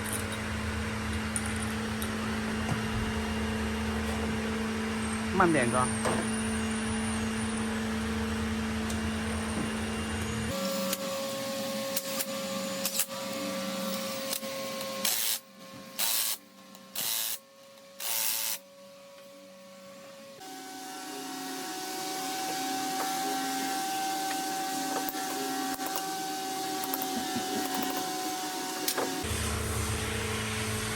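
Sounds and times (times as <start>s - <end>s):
workshop machine hum: 0.0s - 30.9s.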